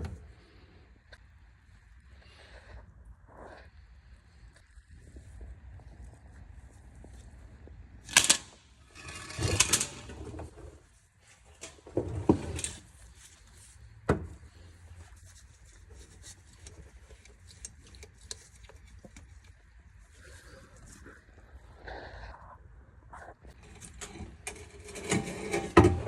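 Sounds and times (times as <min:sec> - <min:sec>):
rattling clatters: 0:08.1 - 0:10.8
tools and metal parts clanking: 0:08.1 - 0:10.8, 0:11.5 - 0:13.0, 0:23.6 - 0:26.0.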